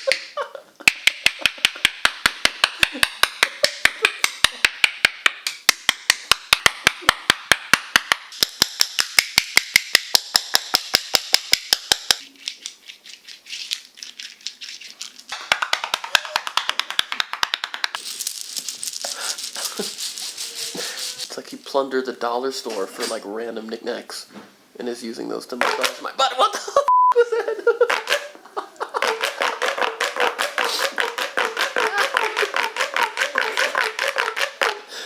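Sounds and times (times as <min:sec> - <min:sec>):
percussive massage strikes: 0:00.9 - 0:12.2, 0:29.1 - 0:34.8.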